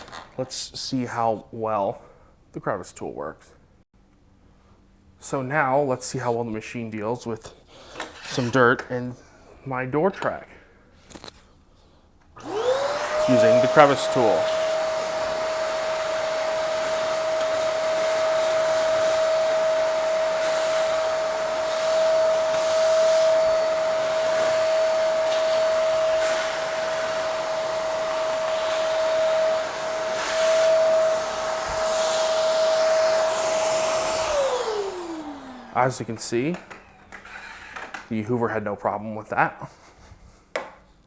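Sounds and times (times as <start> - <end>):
vacuum motor spinning down: 12.4 - 36.1
vacuum cleaner running: 12.4 - 37.1.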